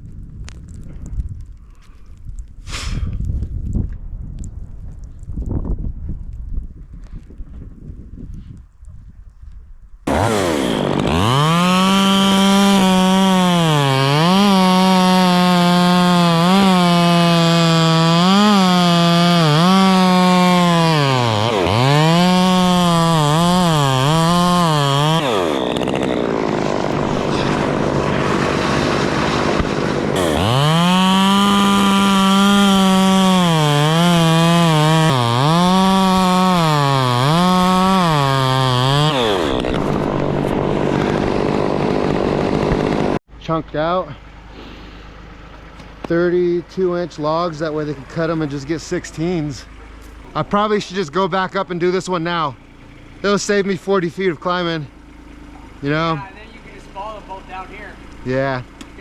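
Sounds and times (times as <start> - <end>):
chainsaw cutting wood: 10.1 - 43.2, 58.0 - 59.0.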